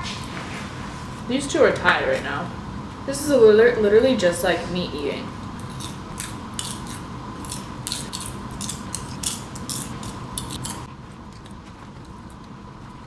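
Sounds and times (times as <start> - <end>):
popcorn being chewed: 5.6 - 13.0.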